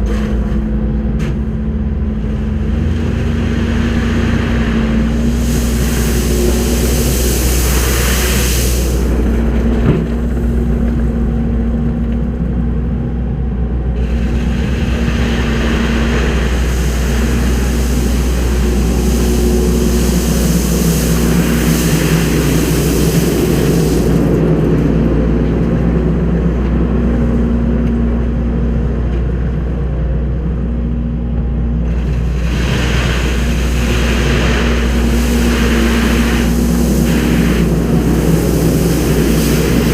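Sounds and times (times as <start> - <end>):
diesel engine running: 0.0 - 39.9
high hiss: 4.1 - 9.3, 14.0 - 24.3, 32.3 - 39.9.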